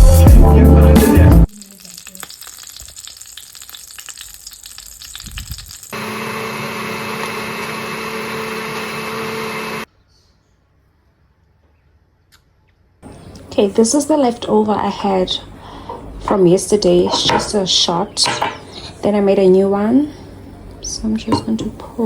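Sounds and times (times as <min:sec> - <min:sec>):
background music: 0:00.0 - 0:01.5
stir fry sizzling in a pan: 0:01.5 - 0:08.5.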